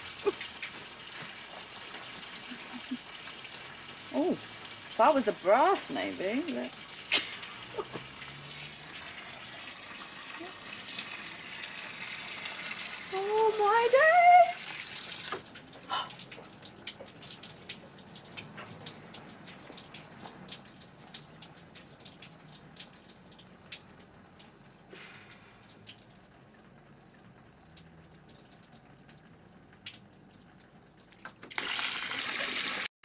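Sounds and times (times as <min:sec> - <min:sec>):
rush of running water: 0:00.0 - 0:21.3, 0:31.4 - 0:32.9
water dripping: 0:00.0 - 0:32.9.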